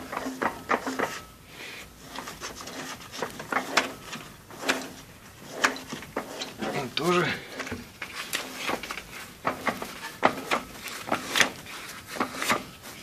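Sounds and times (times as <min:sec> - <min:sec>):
metal clicks and knocks: 0:05.6 - 0:11.6.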